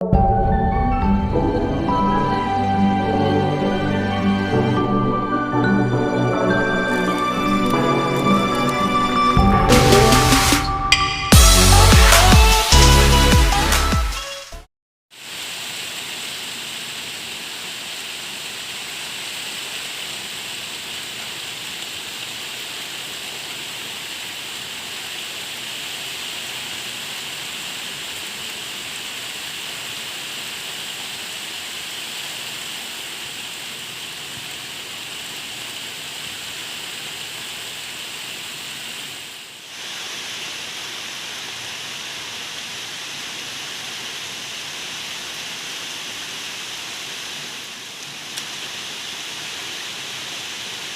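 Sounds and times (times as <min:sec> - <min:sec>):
steady rain hiss: 0:01.4 - 0:10.6, 0:15.1 - 0:50.9.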